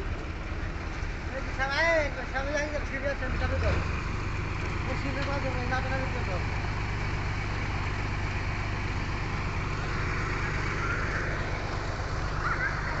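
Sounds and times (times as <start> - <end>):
boat engine droning: 4.4 - 13.0.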